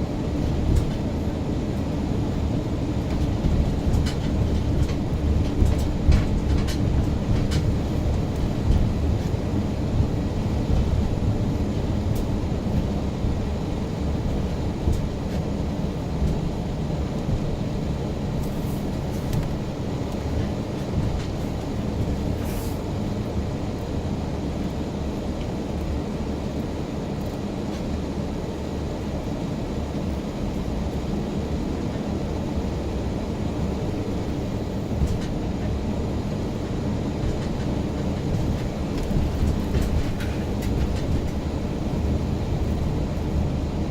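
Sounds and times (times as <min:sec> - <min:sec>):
car road and engine rumble: 0:00.0 - 0:43.9.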